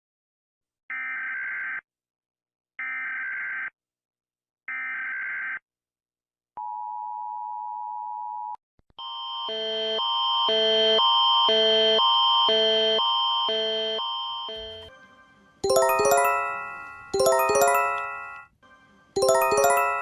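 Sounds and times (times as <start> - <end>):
alternating stepped tone alarm: 9.0 - 15.0, 15.7 - 20.0
two-tone attention signal: 13.9 - 14.9.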